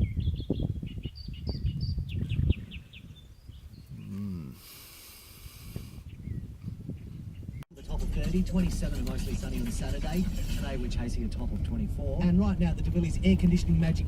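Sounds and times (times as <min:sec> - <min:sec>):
small birds chirping: 0:00.0 - 0:07.6
low rumble: 0:07.8 - 0:14.0.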